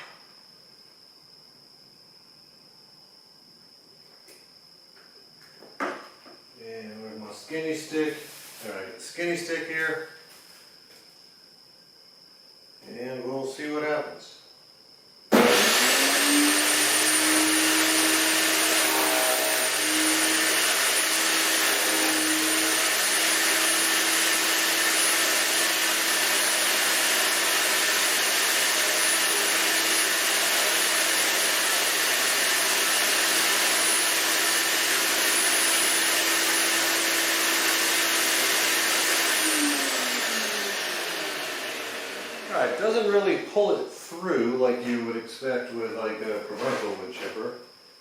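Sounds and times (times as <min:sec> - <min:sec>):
wood chipper motor whine: 0:15.3 - 0:43.3.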